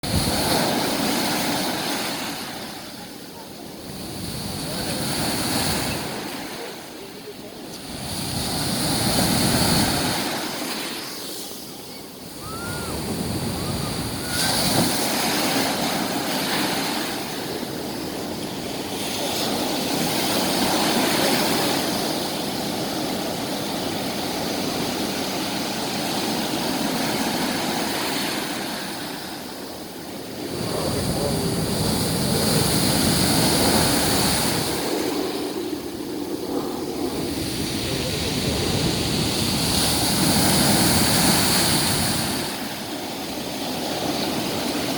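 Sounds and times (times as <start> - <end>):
surf breaking on shore: 0.0 - 44.9.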